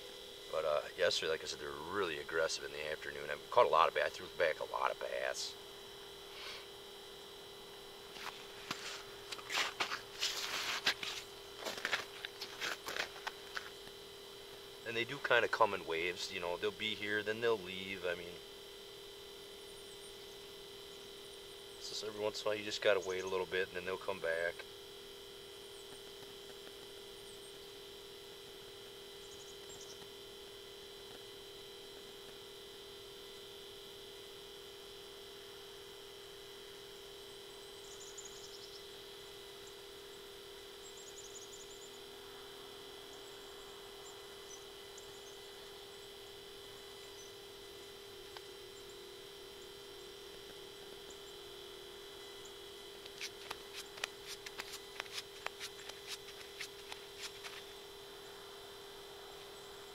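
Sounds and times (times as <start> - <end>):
faint two-tone hum: 0.0 - 59.9
quick run of clicks: 53.0 - 57.7.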